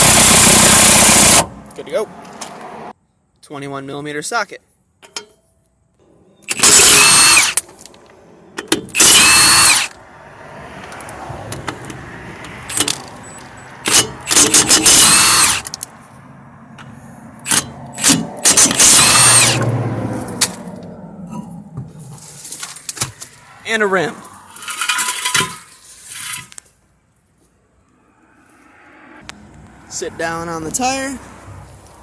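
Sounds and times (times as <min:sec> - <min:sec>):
impact wrench hammering: 0:13.8 - 0:15.7, 0:17.4 - 0:19.7.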